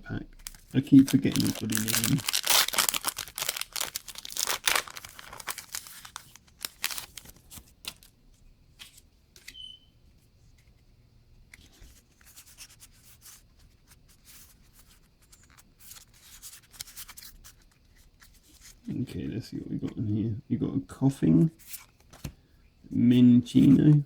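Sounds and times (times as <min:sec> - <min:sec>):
cards being handled: 0:00.4 - 0:08.1, 0:14.2 - 0:18.9, 0:21.6 - 0:22.4
foil wrapper tearing and crinkling: 0:00.4 - 0:08.1.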